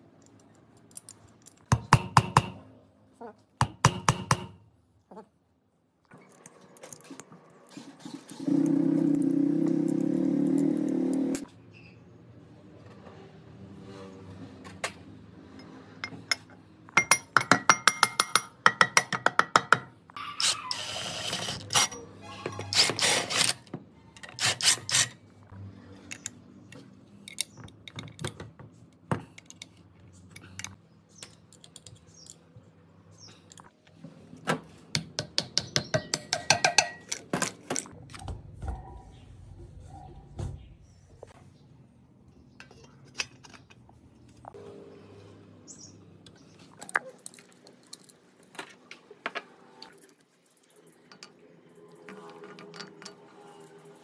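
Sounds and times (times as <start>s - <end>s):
metal tool tapping metal: 16.0s - 19.9s, 35.2s - 37.2s.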